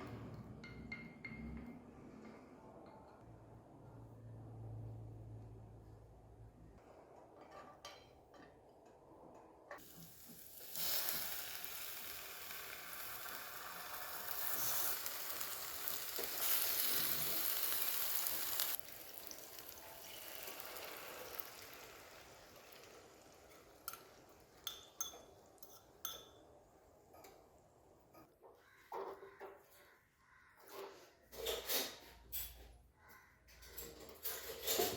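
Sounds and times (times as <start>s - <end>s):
food sizzling in a frying pan: 9.8s - 25.5s.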